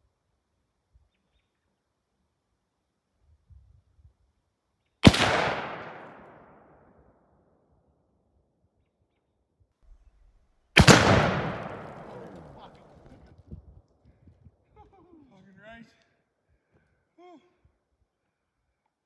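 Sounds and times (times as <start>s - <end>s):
gunshots with rolling echo: 5.0s - 7.0s, 10.8s - 13.3s.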